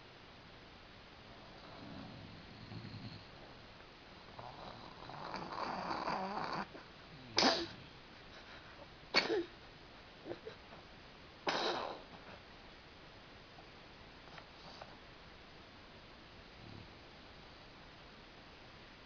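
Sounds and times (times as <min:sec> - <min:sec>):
drawn-out wavering snore: 0:01.3 - 0:03.4, 0:04.4 - 0:07.9
short sharp snorts: 0:07.2 - 0:07.8, 0:11.4 - 0:12.4.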